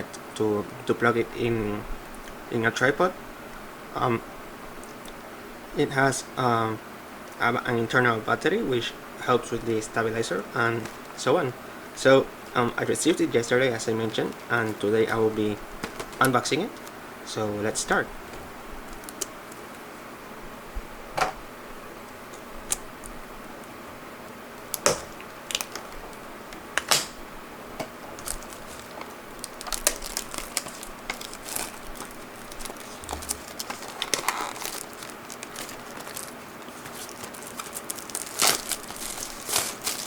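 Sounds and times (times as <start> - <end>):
paper tearing and crumpling: 28.2 - 40.0.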